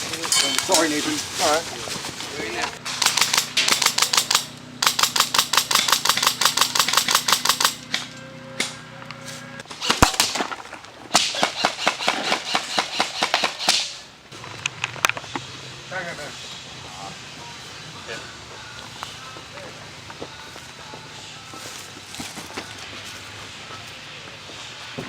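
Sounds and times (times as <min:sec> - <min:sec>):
airsoft guns firing: 0:02.8 - 0:08.8, 0:09.7 - 0:14.1
loud sharp crack: 0:09.7 - 0:14.1.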